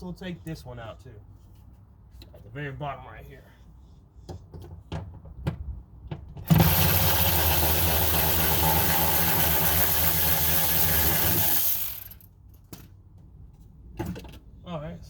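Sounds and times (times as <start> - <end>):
power drill running: 6.5 - 12.3.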